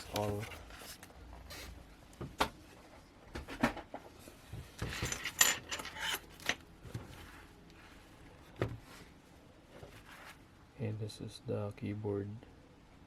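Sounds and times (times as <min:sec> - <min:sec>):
rubbing and rustling: 0:00.0 - 0:02.0, 0:03.8 - 0:10.7.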